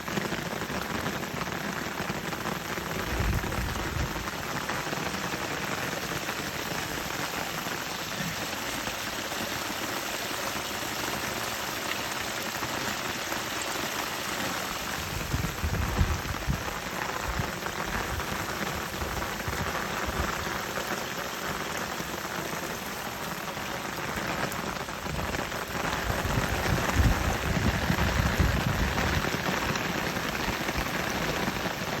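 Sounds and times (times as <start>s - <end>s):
running water hiss: 25.6s - 32.0s.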